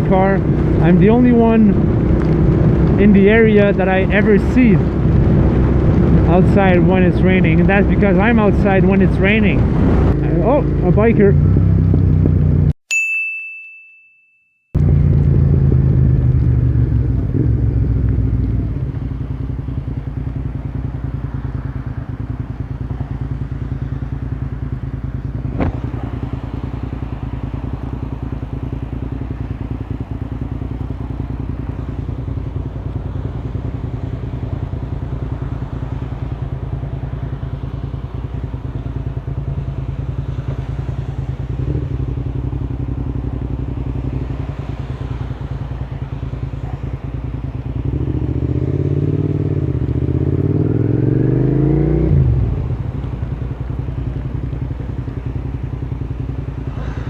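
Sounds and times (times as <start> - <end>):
motorcycle engine idling: 14.8 - 57.0.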